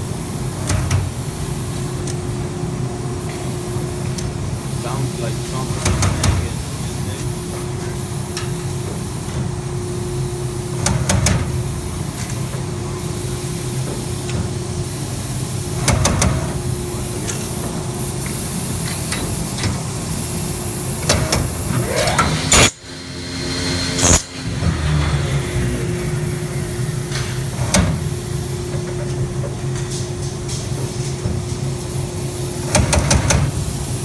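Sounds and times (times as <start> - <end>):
machine knocking: 5.6 - 6.7, 32.6 - 33.6
machine humming: 15.0 - 28.9.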